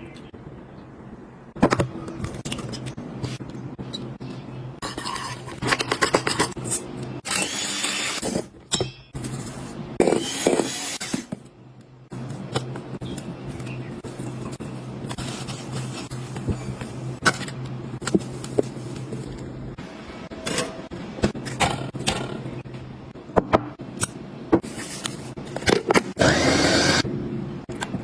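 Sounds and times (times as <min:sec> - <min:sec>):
utensils scraping cookware: 0:04.8 - 0:06.8.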